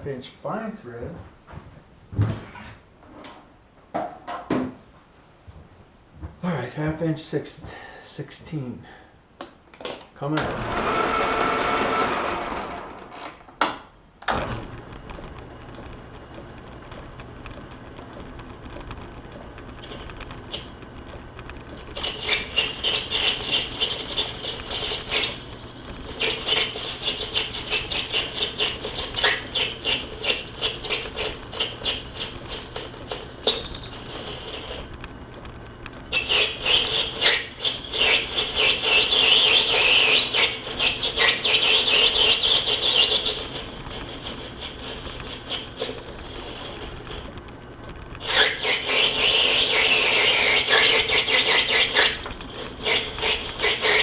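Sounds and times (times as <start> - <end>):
scratchy cutting noise: 15.8 - 34.9, 36.1 - 47.3, 48.2 - 54.0
metal lathe humming: 21.8 - 34.8, 36.1 - 47.3, 48.2 - 54.0.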